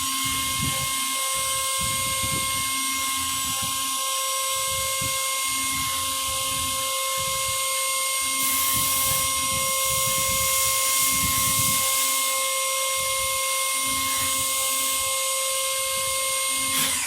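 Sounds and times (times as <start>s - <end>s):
milling machine spindle whine: 0.0s - 17.0s
loud hiss: 8.4s - 12.5s.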